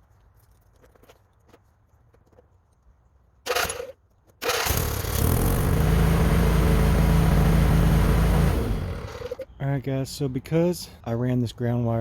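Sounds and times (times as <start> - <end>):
lawn tractor engine running: 3.5 - 9.4.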